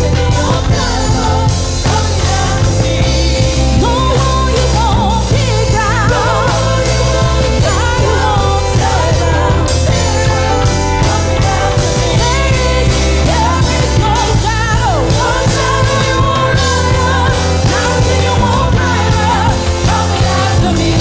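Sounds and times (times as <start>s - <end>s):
bass line: 0.0s - 21.0s
drums: 0.0s - 21.0s
person singing with vibrato: 0.0s - 21.0s.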